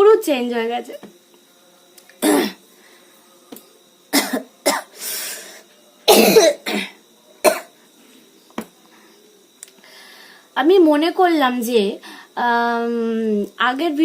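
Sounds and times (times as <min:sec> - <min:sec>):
woman coughing harshly: 0:02.2 - 0:02.6, 0:04.1 - 0:04.9, 0:06.1 - 0:07.7.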